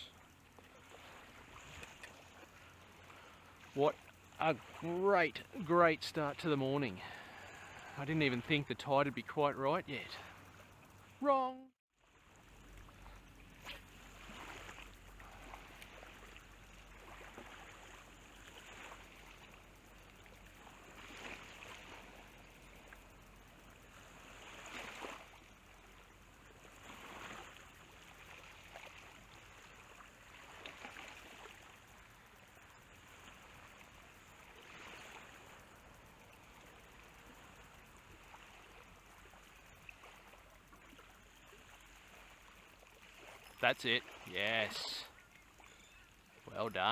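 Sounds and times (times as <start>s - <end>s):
water sloshing and lapping: 0.0s - 11.2s, 12.0s - 46.9s.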